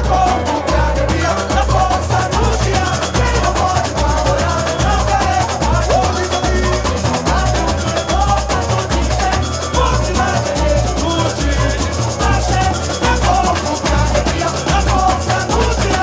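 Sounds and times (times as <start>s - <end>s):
people singing: 0.0s - 16.0s
samba drums and percussion: 0.0s - 16.0s
surdo drums beating: 0.0s - 16.0s.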